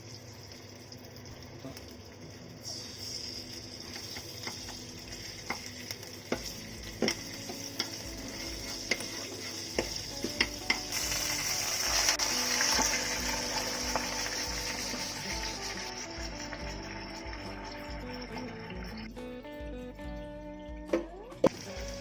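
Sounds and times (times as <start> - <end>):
fish sizzling in oil: 0.0 - 19.1, 21.5 - 22.0
utensil knocking against pan: 6.3 - 8.0.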